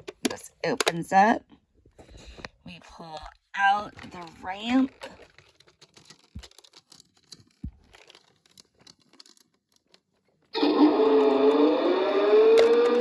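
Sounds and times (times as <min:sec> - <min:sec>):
toy electronic gliding tone: 0:10.6 - 0:13.0.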